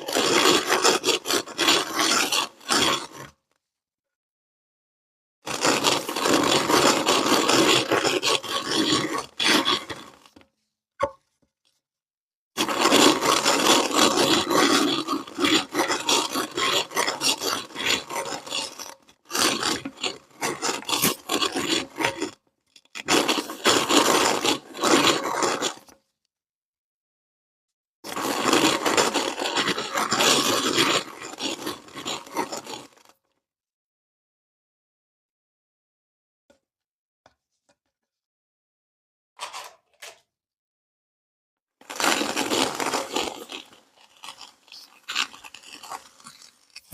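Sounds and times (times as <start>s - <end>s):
sand crunching in meat grinder: 0.0s - 3.4s, 5.5s - 10.4s, 12.6s - 25.9s, 28.1s - 33.1s, 41.8s - 46.9s.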